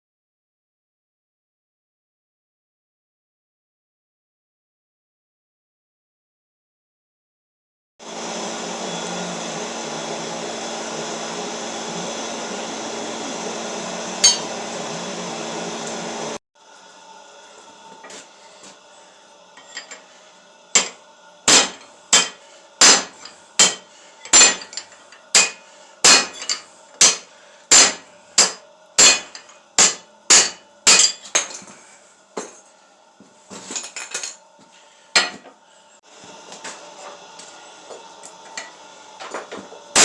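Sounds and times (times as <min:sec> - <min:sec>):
hammer striking steel on anvil: 0:14.2 - 0:14.5, 0:20.7 - 0:31.6.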